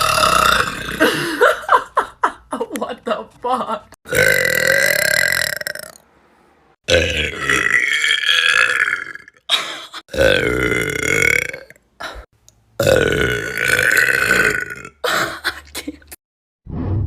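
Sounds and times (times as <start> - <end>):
woman burping: 0.0 - 1.4, 8.5 - 16.1.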